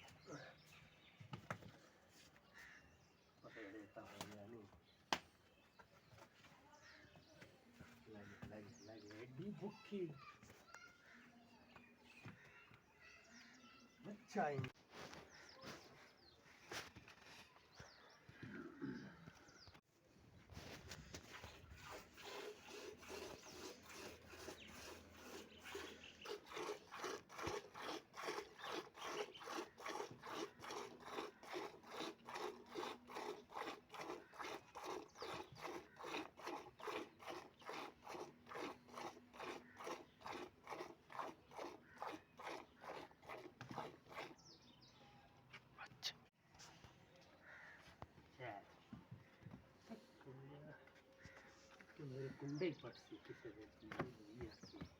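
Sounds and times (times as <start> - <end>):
milk squirting: 21.2 - 44.6.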